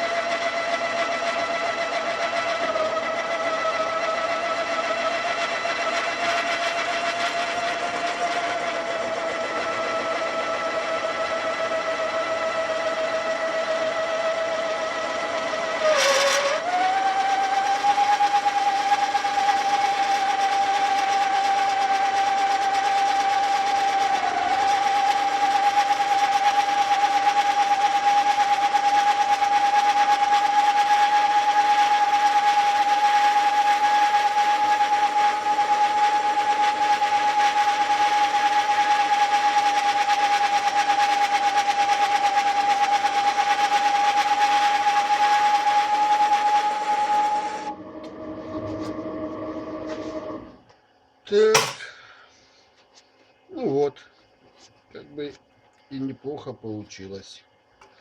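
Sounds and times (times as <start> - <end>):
lathe motor whine: 0.0 - 51.8
sharp knock: 51.5 - 51.9.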